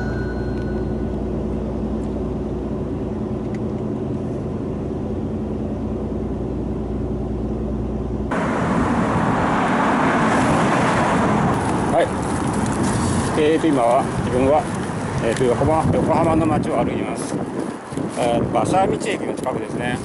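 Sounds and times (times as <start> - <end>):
low motor hum: 0.0 - 13.2
hissy street traffic: 0.0 - 20.0.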